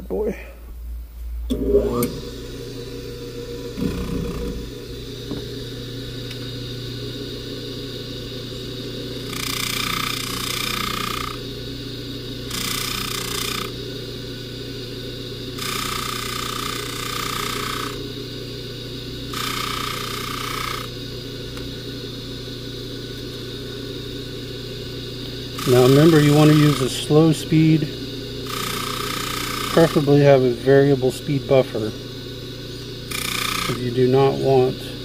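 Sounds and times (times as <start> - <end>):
buffer motor humming: 0.0 - 35.0
chain hissing on buffing wheel: 3.7 - 5.4, 8.4 - 11.8, 12.4 - 13.9, 15.5 - 18.2, 19.2 - 21.1, 25.1 - 35.0.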